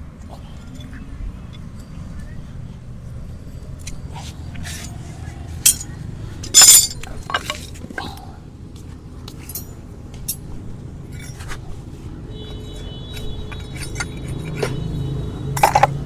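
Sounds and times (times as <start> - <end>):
hoof-trimming tools clicking: 12.8 - 15.0.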